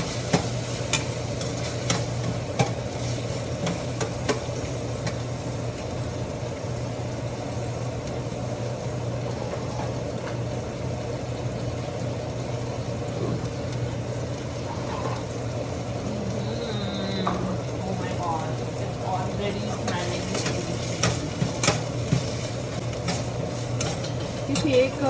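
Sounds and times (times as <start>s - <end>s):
frying sizzle in a pot: 0.0s - 25.0s
utensil clicking against pot: 19.8s - 24.8s.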